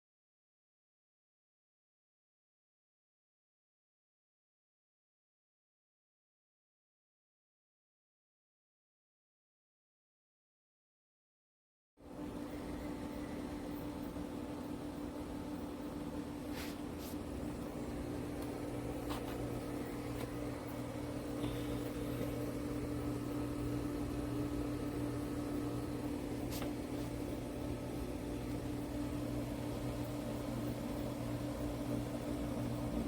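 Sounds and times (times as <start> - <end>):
low mechanical hum: 12.0 - 33.0.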